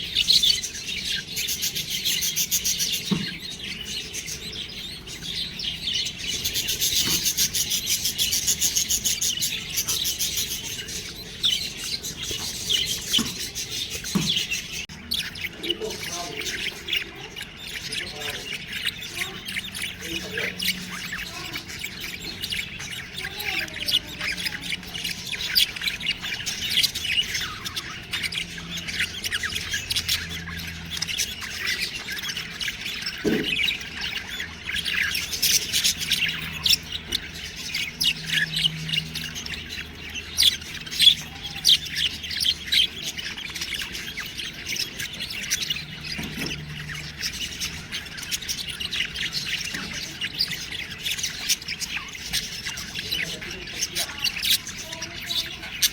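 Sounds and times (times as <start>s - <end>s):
budgerigars chirping and squawking: 0.0s - 55.9s.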